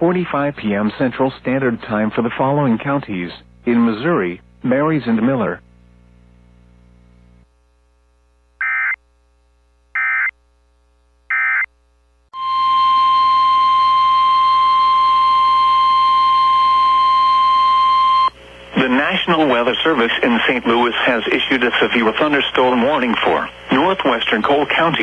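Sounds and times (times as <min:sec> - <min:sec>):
data tone bursts: 0:08.6 - 0:09.0, 0:10.0 - 0:10.3, 0:11.3 - 0:11.7
steady alarm tone: 0:08.6 - 0:09.0, 0:10.0 - 0:10.3, 0:11.3 - 0:11.7, 0:12.4 - 0:18.4
radio hiss: 0:18.3 - 0:25.0.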